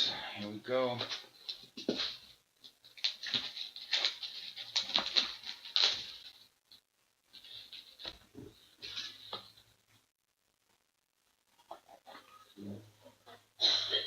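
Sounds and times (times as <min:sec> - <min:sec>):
cardboard and wrapping rustling: 0:00.8 - 0:09.7.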